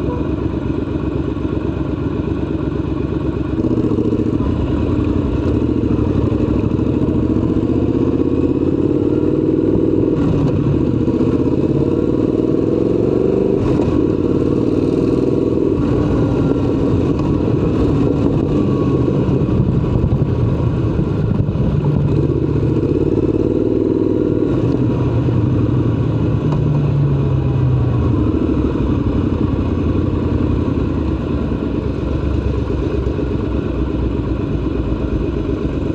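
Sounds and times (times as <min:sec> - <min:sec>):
motorcycle engine accelerating: 0:00.0 - 0:35.9.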